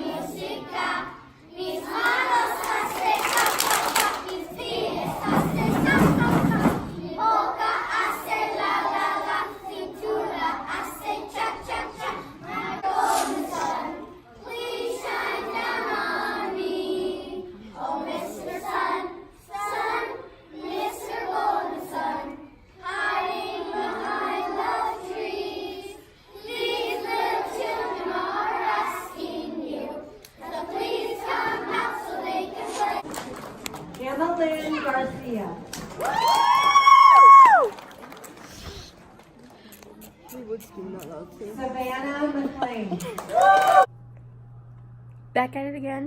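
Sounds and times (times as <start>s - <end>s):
children singing: 0.0s - 33.1s.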